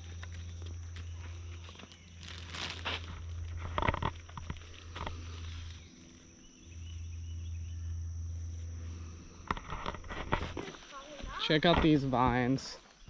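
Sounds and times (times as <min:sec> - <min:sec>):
footsteps crunching on trail: 0:00.0 - 0:06.7
insects droning: 0:00.0 - 0:13.0
low steady rumble: 0:00.0 - 0:13.0.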